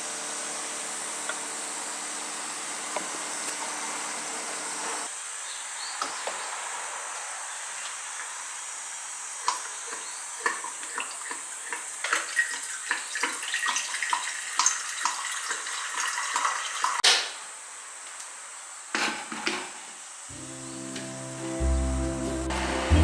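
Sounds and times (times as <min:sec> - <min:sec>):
water running in a sink: 0:00.0 - 0:05.1, 0:09.4 - 0:17.0.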